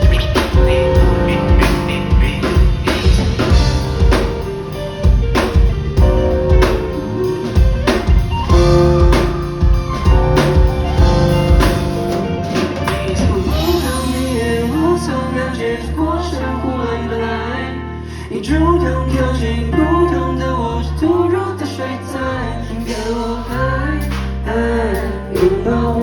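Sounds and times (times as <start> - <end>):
drum kit beat: 0.0 - 14.7
sustained melodic notes: 0.0 - 18.1
bass: 0.0 - 26.0.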